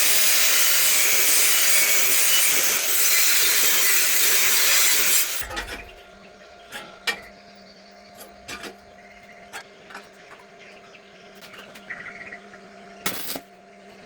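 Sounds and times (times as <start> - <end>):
harsh metal cutting noise: 0.0 - 6.1.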